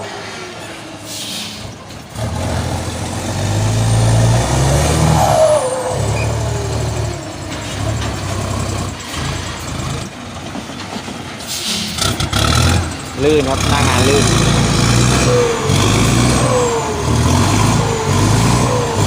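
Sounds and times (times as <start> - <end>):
truck diesel engine revving: 0.0 - 10.5, 11.6 - 19.0
whistle rising and falling: 4.4 - 7.5.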